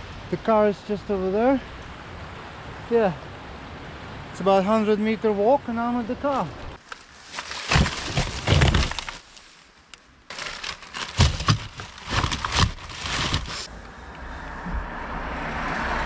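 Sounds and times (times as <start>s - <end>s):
footsteps on rough ground: 6.3s - 9.7s, 10.3s - 13.7s.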